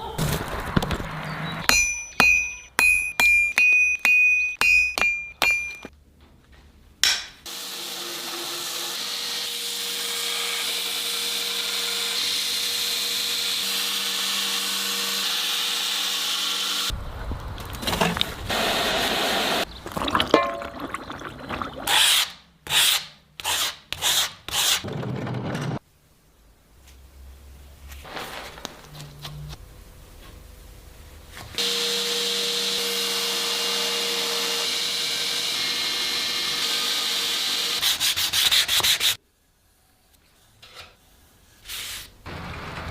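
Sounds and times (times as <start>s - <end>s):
hammer blows ringing on steel: 1.7s - 5.9s.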